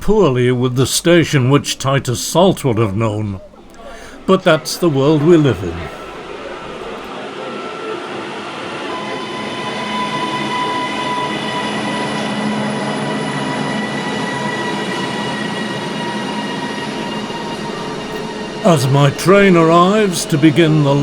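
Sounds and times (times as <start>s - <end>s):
train rumble: 0.0s - 7.1s, 12.0s - 21.0s
wheels and brakes whining: 0.0s - 7.1s, 8.8s - 21.0s.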